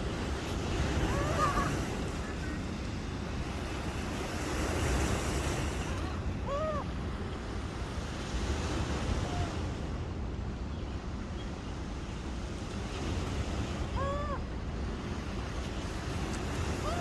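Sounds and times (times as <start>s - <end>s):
rushing wind: 0.0s - 17.0s
surf: 0.0s - 17.0s
seagull calls: 1.0s - 2.6s, 5.8s - 7.0s, 13.9s - 14.5s, 16.8s - 17.0s.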